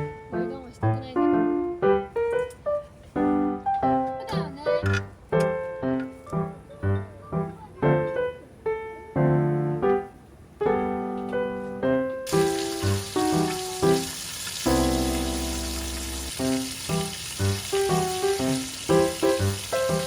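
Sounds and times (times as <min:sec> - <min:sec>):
light keyboard melody: 0:00.0 - 0:20.0
steady hiss: 0:10.9 - 0:20.0.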